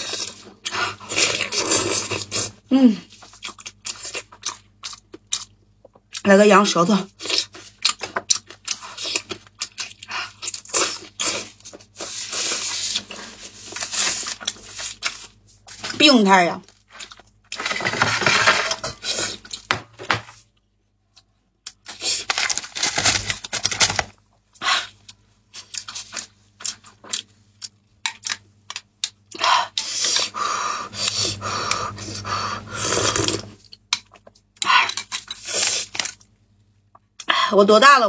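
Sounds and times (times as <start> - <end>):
person chewing meat: 0.0 - 6.2, 7.1 - 15.8, 24.5 - 37.3.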